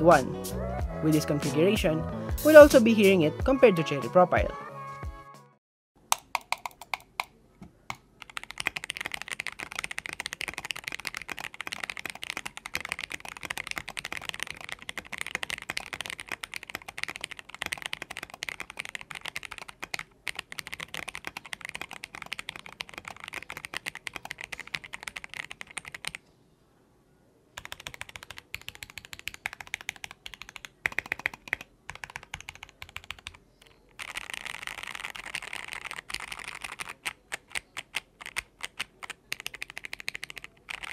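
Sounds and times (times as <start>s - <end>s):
mechanical keyboard typing: 6.1s - 7.3s, 7.9s - 26.2s, 27.6s - 40.9s.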